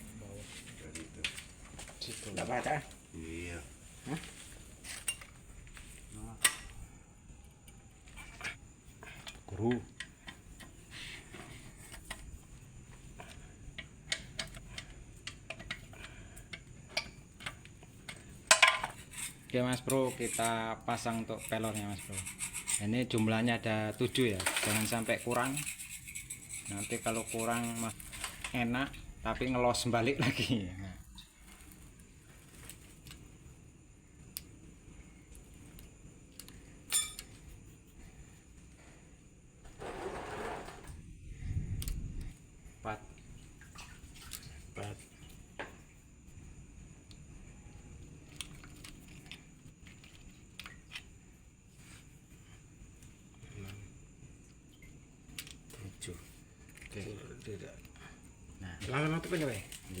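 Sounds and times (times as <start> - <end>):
small steel parts clinking: 16.5 - 23.3, 23.9 - 28.6, 36.4 - 37.3
metal parts and tools clicking: 24.0 - 28.6.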